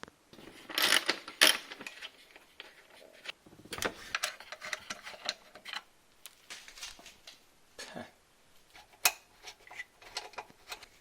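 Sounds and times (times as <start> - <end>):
small parts clicking and clattering: 0.4 - 5.9.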